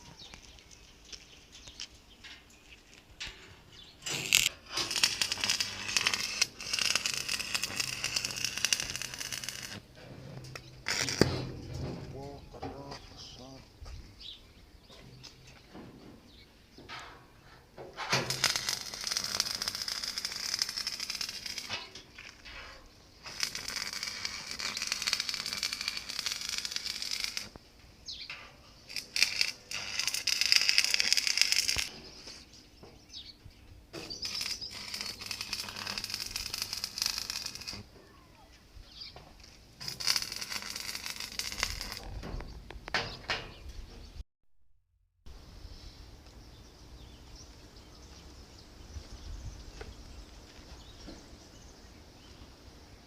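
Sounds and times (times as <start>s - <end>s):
welding arc crackling and sizzling: 4.0s - 11.8s, 18.0s - 27.6s, 28.8s - 32.4s, 33.9s - 37.9s, 39.4s - 42.6s.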